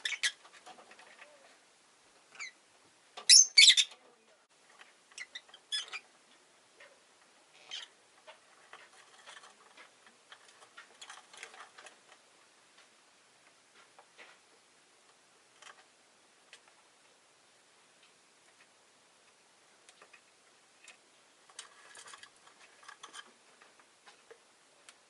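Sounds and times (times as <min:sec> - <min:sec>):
bird chirping: 0:00.0 - 0:00.4, 0:02.3 - 0:02.6, 0:03.2 - 0:04.0, 0:05.1 - 0:06.1.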